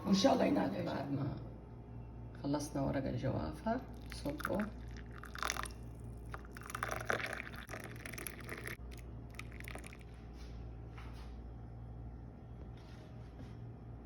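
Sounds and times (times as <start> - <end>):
steady low hum: 0.0 - 14.0
tea being poured: 3.9 - 10.1.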